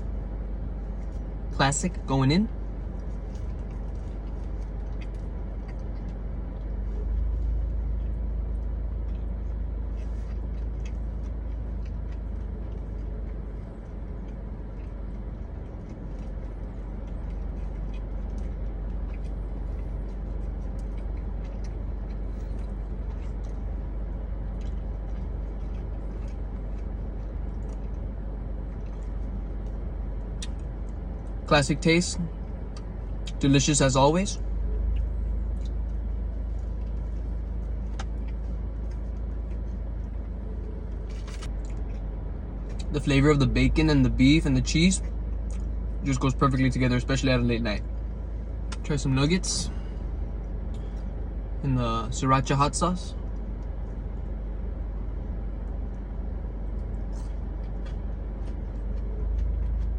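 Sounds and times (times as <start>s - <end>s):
low engine rumble: 0.0s - 59.9s
chewing and wet mouth clicks: 2.8s - 31.4s, 34.4s - 42.9s, 45.0s - 46.0s, 55.6s - 59.9s.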